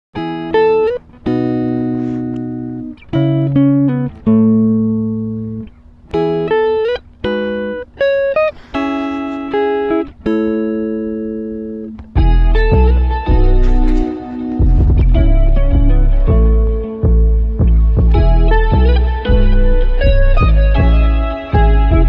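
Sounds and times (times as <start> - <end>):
plucked guitar notes and chords: 0.2 - 22.0
deep bass layer: 12.2 - 22.0.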